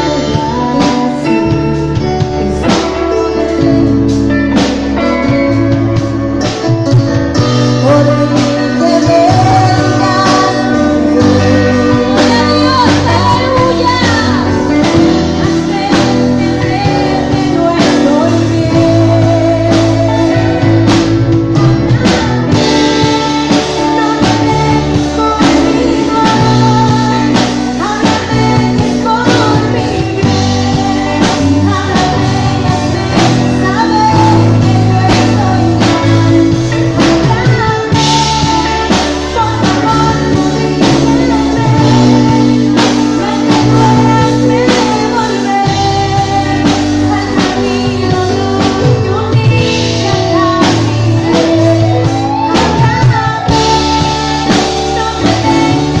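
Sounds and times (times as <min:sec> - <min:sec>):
loud music with singing: 0:00.0 - 0:56.0.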